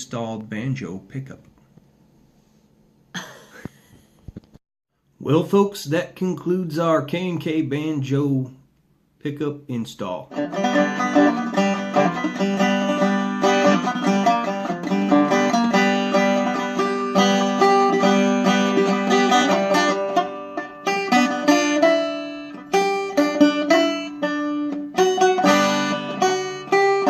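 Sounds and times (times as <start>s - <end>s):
banjo picking: 10.2s - 27.0s.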